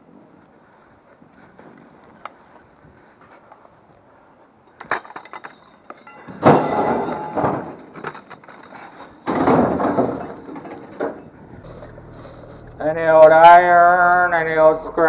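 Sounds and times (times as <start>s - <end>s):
loud crashing scrapes: 11.4s - 15.0s.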